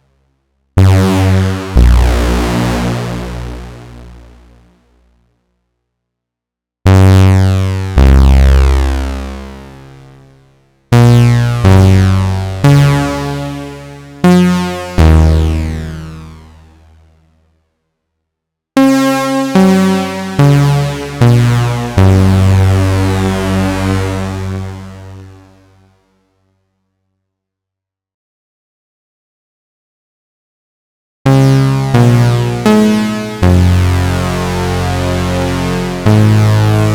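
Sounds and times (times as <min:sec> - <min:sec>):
bass-heavy synthesizer notes: 0:00.8 - 0:05.0, 0:06.9 - 0:17.2, 0:18.8 - 0:25.8, 0:31.3 - 0:36.9.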